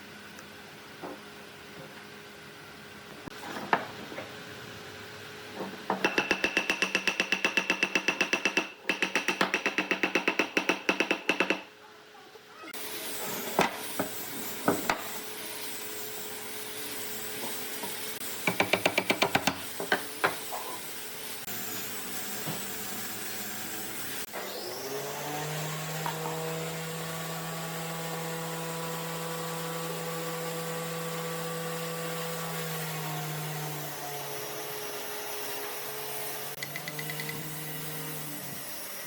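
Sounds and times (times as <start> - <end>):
woodworking machine motor: 21.5 - 39.0.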